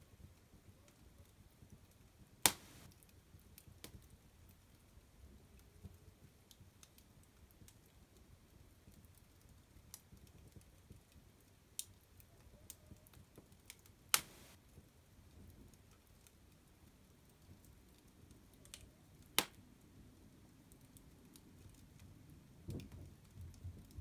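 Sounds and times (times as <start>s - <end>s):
fire crackling: 1.5s - 12.4s, 13.0s - 24.0s
brief hiss: 2.5s - 2.9s, 14.2s - 14.6s.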